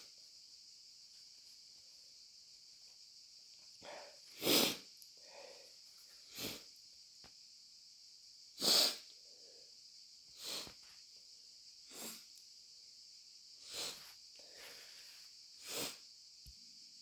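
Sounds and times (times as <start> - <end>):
person sneezing: 4.4 - 4.8, 8.6 - 9.0.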